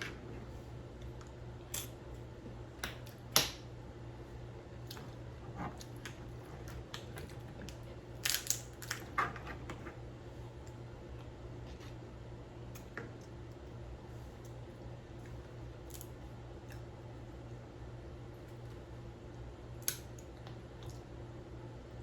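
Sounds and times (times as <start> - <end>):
steady low hum: 0.0 - 22.0
shells cracking: 8.2 - 9.0.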